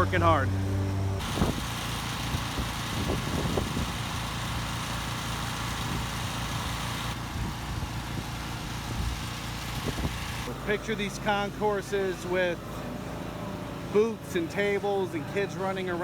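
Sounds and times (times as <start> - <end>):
engine idling: 1.2 - 11.0.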